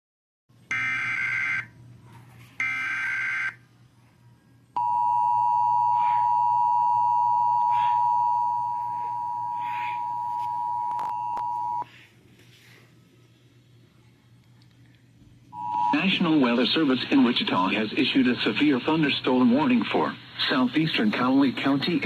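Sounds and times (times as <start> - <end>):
two-tone attention signal: 4.8 - 11.8, 15.6 - 16.2
digital data tone bursts: 7.3 - 11.0.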